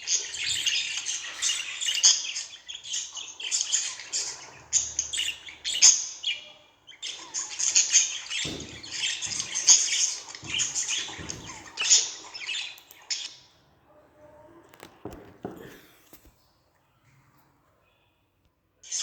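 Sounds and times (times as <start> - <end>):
budgerigar chirping and warbling: 0.0 - 13.4.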